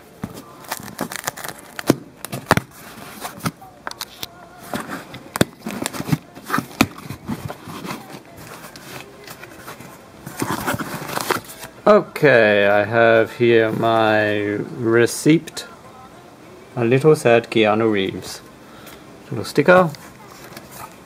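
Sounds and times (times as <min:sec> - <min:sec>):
cardboard rustling and crinkling: 0:00.2 - 0:11.7.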